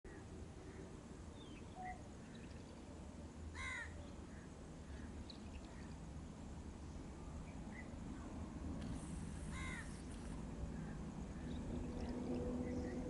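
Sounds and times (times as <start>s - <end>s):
low background rumble: 0.1s - 13.0s
crow cawing: 3.6s - 3.9s, 9.5s - 9.9s
birds chirping: 8.9s - 13.0s.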